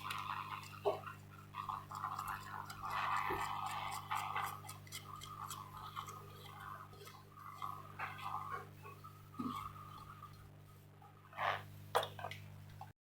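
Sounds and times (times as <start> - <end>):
low electrical hum: 0.0 - 13.0
small tools clicking: 1.8 - 7.6.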